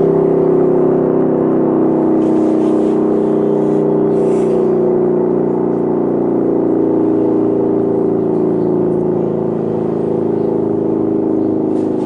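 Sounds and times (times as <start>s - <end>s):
electric motor siren wailing: 0.0s - 12.0s.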